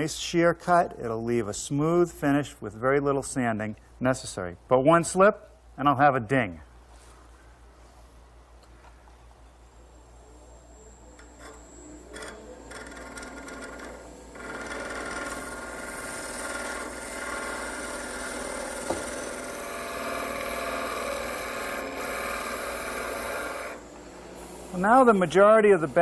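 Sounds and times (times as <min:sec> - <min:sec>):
chisel shaving wood on lathe: 0:11.2 - 0:23.9.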